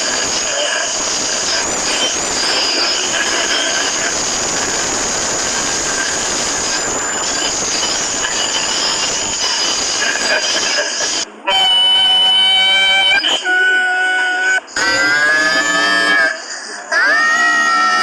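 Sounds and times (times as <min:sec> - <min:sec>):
shrill squealing tones: 0:00.0 - 0:04.9, 0:05.6 - 0:18.0
loud rushing noise: 0:00.0 - 0:11.4.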